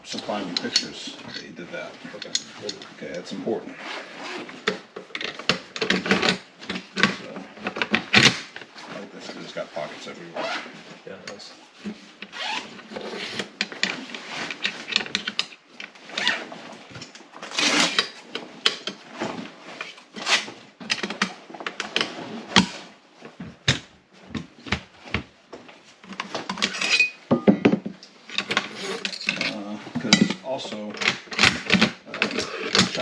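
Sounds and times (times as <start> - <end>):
bag rustling and scraping: 1.3 - 15.2, 15.9 - 23.6, 28.2 - 29.9
metal clinks and knocks: 26.1 - 33.0.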